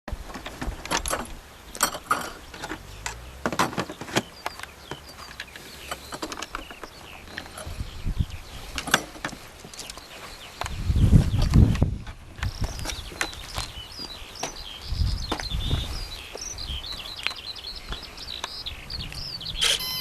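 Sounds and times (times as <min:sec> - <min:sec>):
faint chirps: 0:12.5 - 0:20.0.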